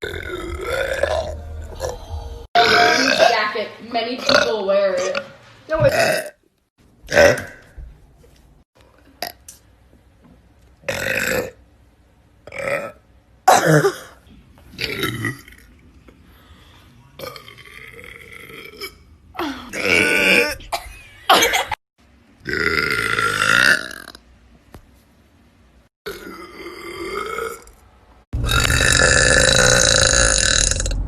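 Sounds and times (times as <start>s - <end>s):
young women burping: 2.5s - 3.6s, 4.2s - 5.2s, 18.6s - 21.7s.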